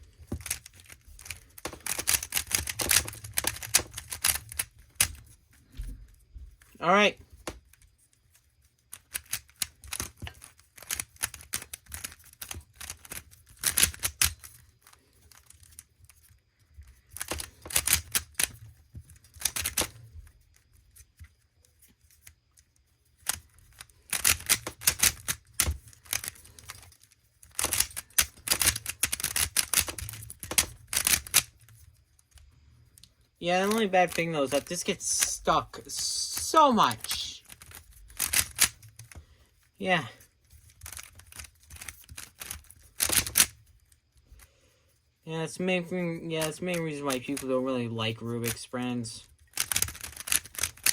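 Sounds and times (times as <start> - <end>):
puzzle cube layers clicking: 0.3 - 5.3, 8.9 - 15.8, 17.2 - 20.0, 23.2 - 31.7, 33.5 - 39.2, 40.6 - 43.6, 49.5 - 50.9.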